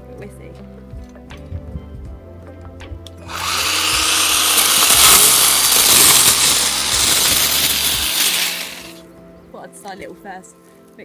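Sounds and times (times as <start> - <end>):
small chainsaw running: 3.3 - 9.0.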